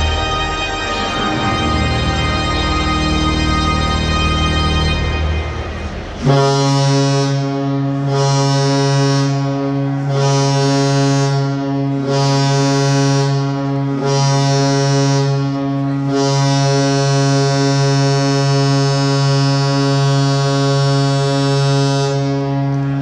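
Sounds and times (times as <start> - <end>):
deep goal horn blast: 0.0 - 23.0.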